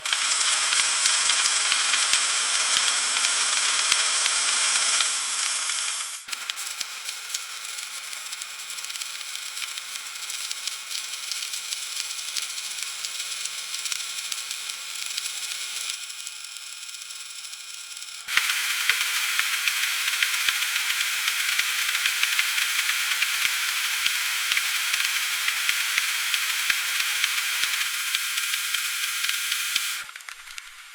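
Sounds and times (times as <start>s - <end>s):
freezing rain hissing: 18.3s - 30.9s
ice pellets ticking: 18.4s - 30.9s.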